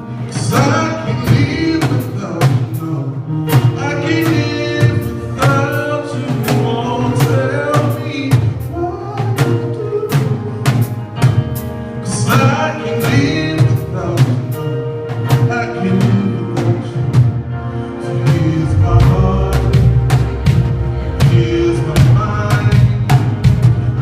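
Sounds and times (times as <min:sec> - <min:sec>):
person singing: 0:00.0 - 0:11.4, 0:12.0 - 0:23.7
drum kit steady beat: 0:00.0 - 0:24.0
sustained chords: 0:15.9 - 0:24.0.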